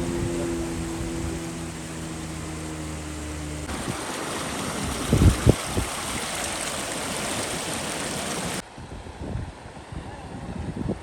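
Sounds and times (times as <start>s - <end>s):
floodwater rushing: 0.0s - 8.6s.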